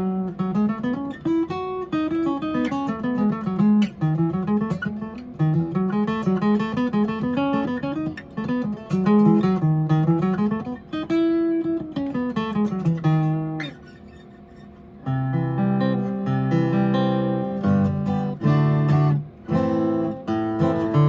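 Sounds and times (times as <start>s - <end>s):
acoustic guitar picking: 0.0s - 21.0s.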